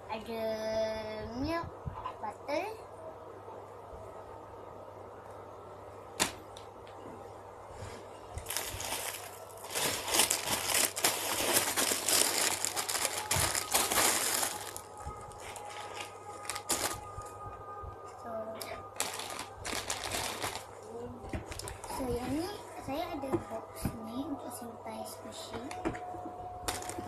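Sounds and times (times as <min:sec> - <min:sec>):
squishy toys crinkling and rustling: 0:08.4 - 0:17.0, 0:18.9 - 0:22.6, 0:26.6 - 0:27.0.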